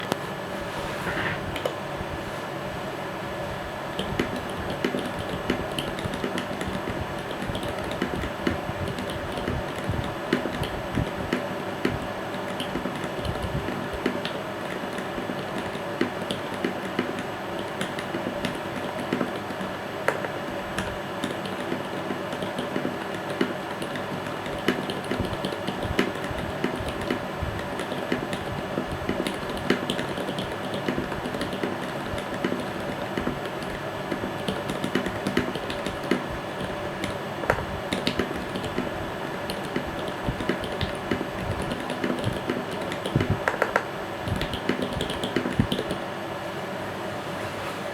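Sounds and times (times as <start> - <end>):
mechanical keyboard typing: 4.0 - 46.0.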